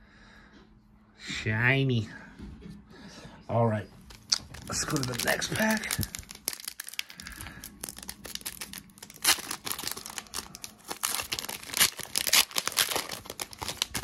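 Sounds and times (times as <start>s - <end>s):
foil wrapper crinkling: 4.0s - 14.0s
foil ripping: 4.1s - 14.0s.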